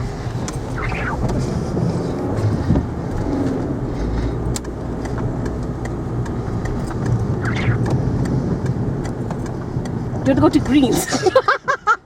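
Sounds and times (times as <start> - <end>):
car engine and road noise: 0.0 - 12.0
light clicks: 4.5 - 10.0.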